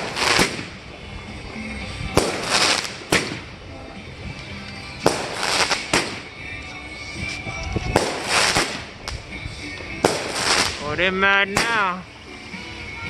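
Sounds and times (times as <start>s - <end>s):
firework bangs: 0.0s - 1.0s, 2.1s - 3.6s, 5.0s - 6.5s, 7.8s - 9.3s, 10.0s - 10.9s, 11.5s - 11.9s
firework crackling and hissing: 0.0s - 12.6s.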